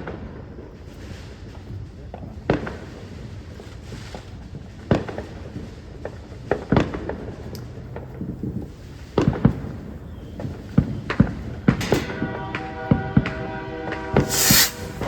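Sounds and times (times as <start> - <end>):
fireworks bangs with echo: 14.0 - 15.0.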